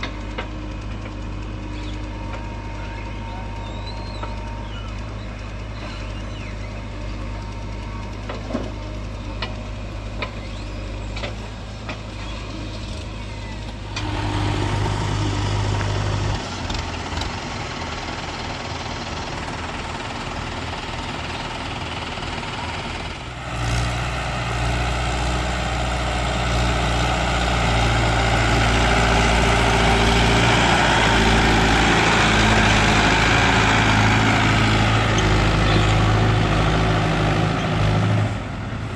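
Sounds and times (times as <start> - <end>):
backhoe loader engine: 0.0 - 38.9
tractor engines: 0.0 - 38.9.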